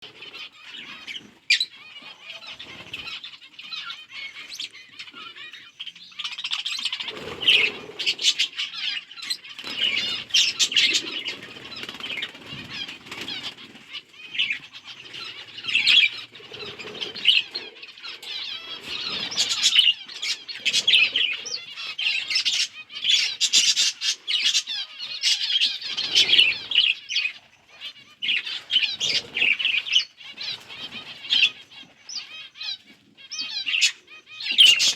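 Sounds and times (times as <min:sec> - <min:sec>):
budgerigars chirping and chattering: 0:00.0 - 0:34.9
wings flapping: 0:07.0 - 0:08.6, 0:09.5 - 0:17.7.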